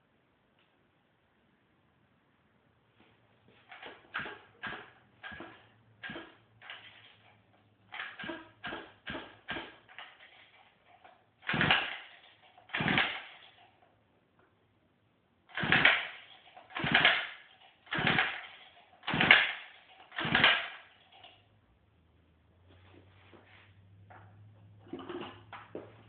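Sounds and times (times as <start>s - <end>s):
small engine pull-cord turning over: 3.6s - 13.8s, 15.5s - 21.4s.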